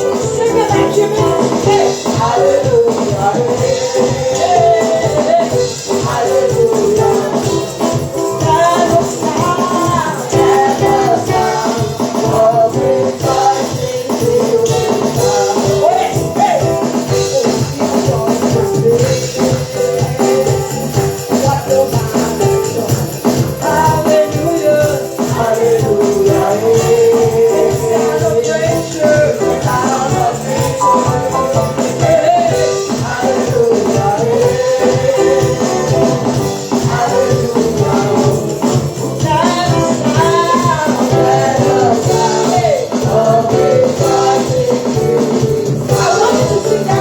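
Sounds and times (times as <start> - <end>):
voices singing: 0.0 - 47.0
worship band playing: 0.0 - 47.0.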